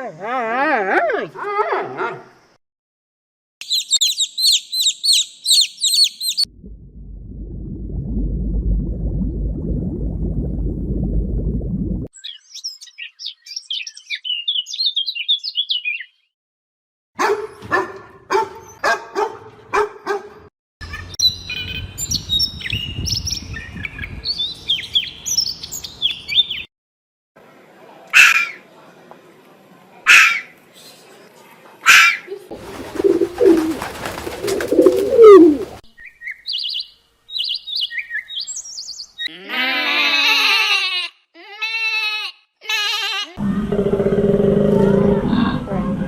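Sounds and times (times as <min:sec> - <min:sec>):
small birds chirping: 0:03.6 - 0:06.5, 0:12.2 - 0:16.3, 0:32.3 - 0:39.3
low rumbling noise: 0:06.5 - 0:12.1, 0:43.4 - 0:46.0
short pitched barking calls: 0:17.2 - 0:20.3
loud animal call: 0:39.3 - 0:45.7.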